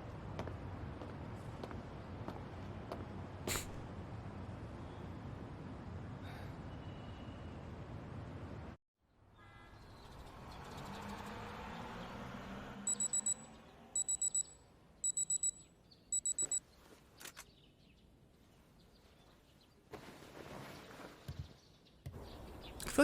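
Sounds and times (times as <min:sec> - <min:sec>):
alarm clock beeping: 0:12.9 - 0:16.6.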